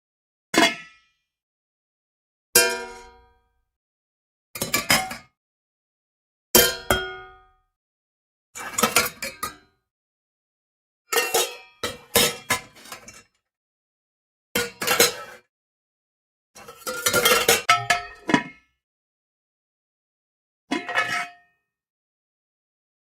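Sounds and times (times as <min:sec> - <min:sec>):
metal pots and pans clanging: 0:11.2 - 0:13.2, 0:14.6 - 0:15.4, 0:16.6 - 0:18.5.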